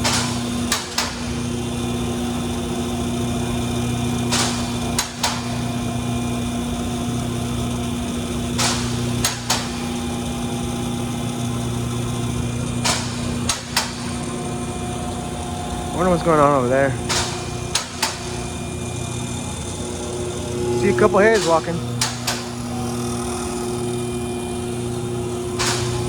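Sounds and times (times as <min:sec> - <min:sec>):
electric pump humming: 0:00.0 - 0:26.0.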